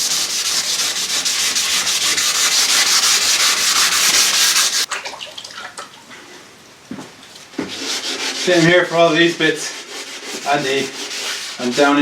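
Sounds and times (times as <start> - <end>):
sandpaper scratching on metal: 0.0 - 4.9, 7.7 - 12.0.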